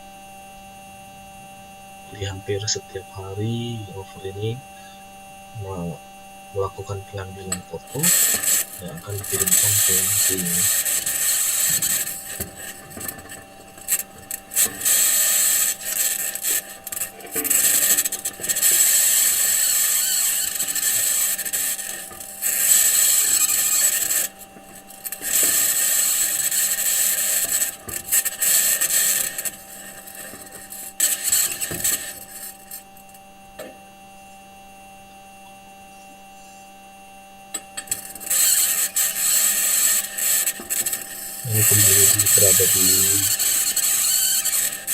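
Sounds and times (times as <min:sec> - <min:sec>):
steady two-tone hum: 0:00.0 - 0:44.9
metal wheels grinding over rocky ground: 0:07.9 - 0:32.8, 0:40.0 - 0:44.9.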